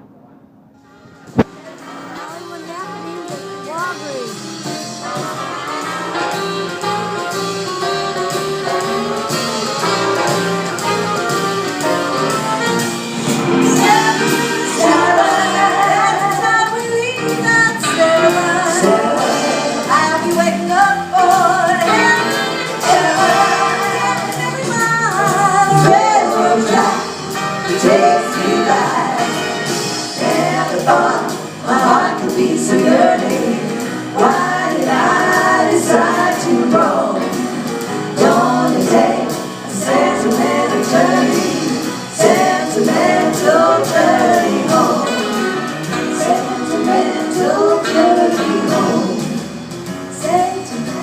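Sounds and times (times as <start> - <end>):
jazz music: 0.0 - 51.0.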